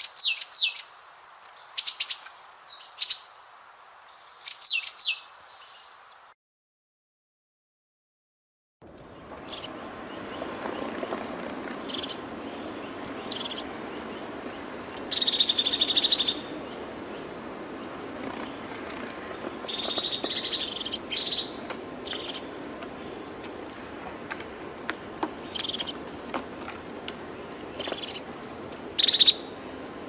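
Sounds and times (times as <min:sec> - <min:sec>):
bird chirps: 0:00.0 - 0:03.3, 0:04.1 - 0:05.9, 0:08.8 - 0:23.7, 0:24.3 - 0:26.0, 0:27.3 - 0:29.5
outdoor ambience: 0:00.0 - 0:06.4, 0:08.8 - 0:30.0
rapid pulsed bird trill: 0:14.9 - 0:16.9, 0:27.8 - 0:29.5.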